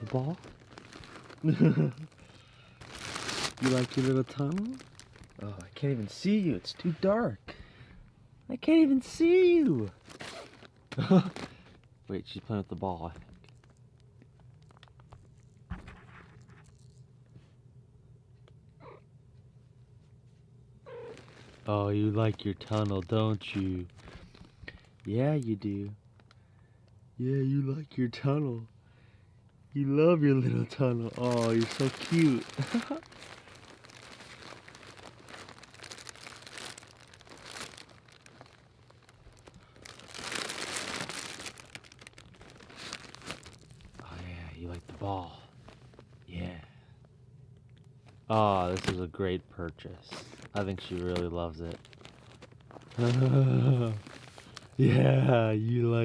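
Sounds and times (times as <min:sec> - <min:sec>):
fabric tunnel rustling and crinkling: 0:00.0 - 0:07.4, 0:08.5 - 0:15.0, 0:20.9 - 0:25.9, 0:30.2 - 0:46.5, 0:48.0 - 0:56.0.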